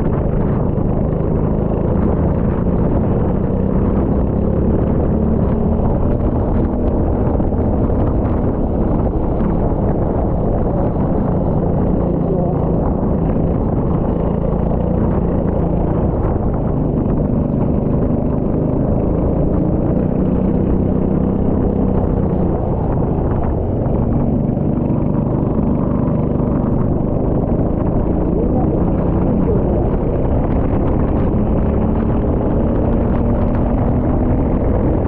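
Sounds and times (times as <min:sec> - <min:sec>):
go-kart engine running: 0:00.0 - 0:35.0.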